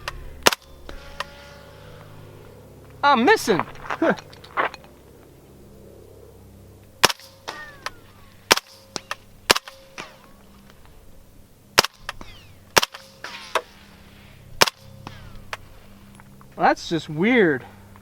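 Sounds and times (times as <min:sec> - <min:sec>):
suppressed gunshots: 0:00.0 - 0:01.4, 0:07.0 - 0:10.5, 0:11.7 - 0:13.8, 0:14.5 - 0:15.6.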